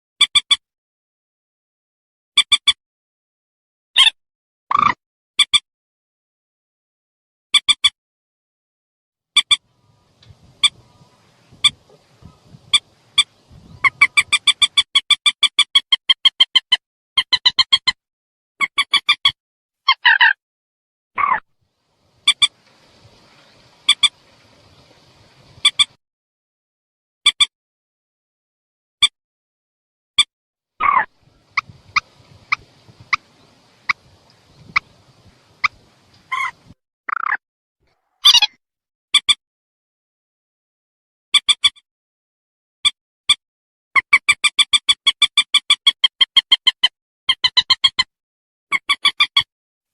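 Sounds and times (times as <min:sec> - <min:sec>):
rail bird call: 0:09.4 - 0:14.8, 0:21.9 - 0:26.0, 0:30.8 - 0:36.8.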